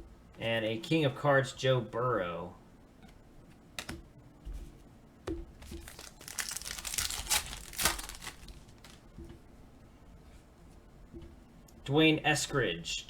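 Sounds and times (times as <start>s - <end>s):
wrapper crinkling: 5.6s - 9.0s
foil pack tearing: 5.7s - 9.0s.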